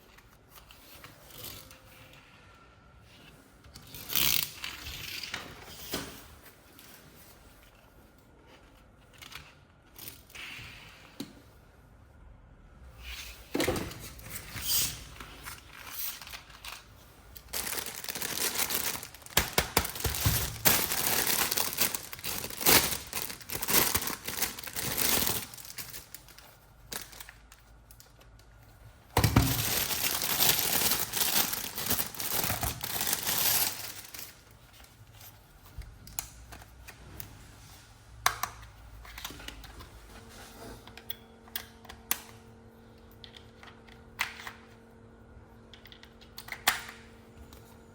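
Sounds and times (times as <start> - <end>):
packaging crinkled and torn open: 17.4 - 28.3, 29.2 - 34.4.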